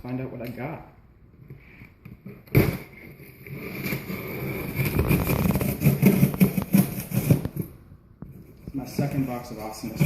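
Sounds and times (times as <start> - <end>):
cardboard box rustling and scraping: 3.0 - 7.7.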